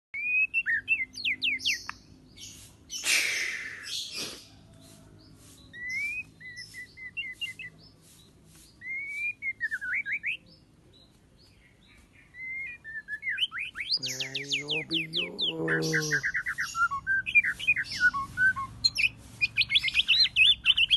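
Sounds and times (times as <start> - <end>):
bird singing whistled phrases: 0.2 - 2.0, 5.8 - 7.8, 8.8 - 10.5, 12.3 - 20.9
short bird clicks: 1.7 - 2.1
harsh noisy bird note: 3.0 - 4.4.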